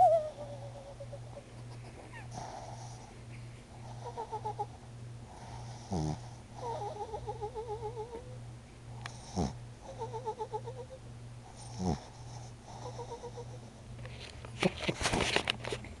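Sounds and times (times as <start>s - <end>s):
steady low hum: 0.0s - 16.0s
dog snoring: 2.1s - 3.1s, 5.3s - 8.3s, 9.0s - 10.8s, 11.5s - 13.6s
dog snorting: 5.4s - 8.2s, 9.0s - 10.8s, 11.5s - 13.6s.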